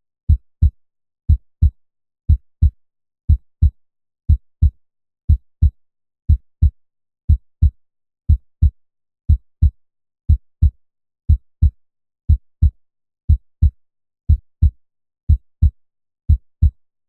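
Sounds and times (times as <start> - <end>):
heartbeat thumps: 2.6 - 3.7, 10.3 - 16.8.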